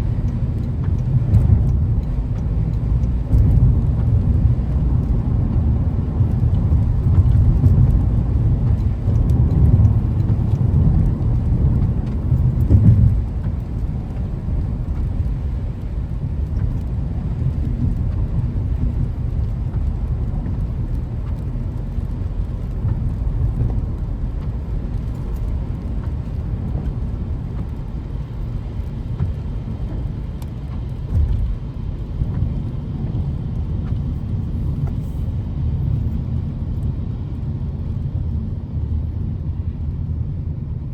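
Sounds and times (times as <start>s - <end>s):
car engine and tyres rumbling: 0.0s - 40.9s.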